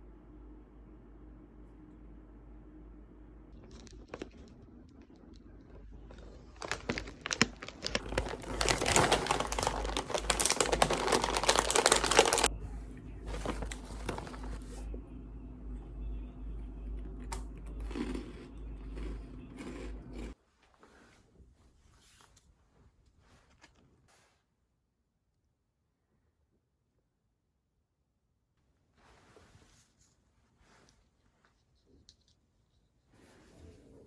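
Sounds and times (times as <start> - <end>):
packaging crumpling and tearing: 3.6 - 5.0, 5.7 - 12.5, 13.2 - 14.8
rustling and handling: 3.6 - 15.0.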